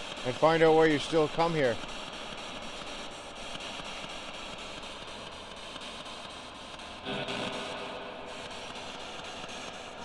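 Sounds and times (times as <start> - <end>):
radio static hiss: 7.0 - 9.2.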